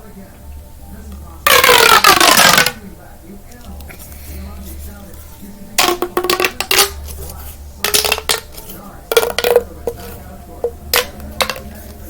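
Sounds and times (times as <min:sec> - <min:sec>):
plastic pop tubes clattering: 0:01.4 - 0:02.8, 0:05.8 - 0:12.0.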